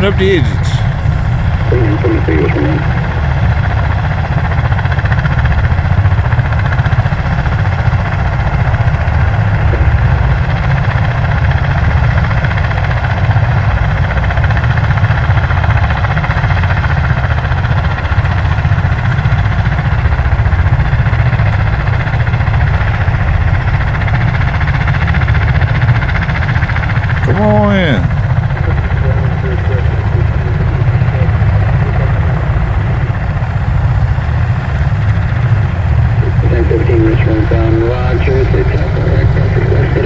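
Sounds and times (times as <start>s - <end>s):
aircraft engines droning and throbbing: 0.0s - 40.0s.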